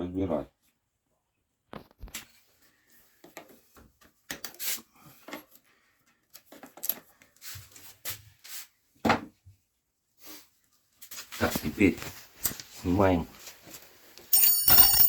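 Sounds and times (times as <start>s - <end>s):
tools and metal parts clicking: 14.4s - 15.0s.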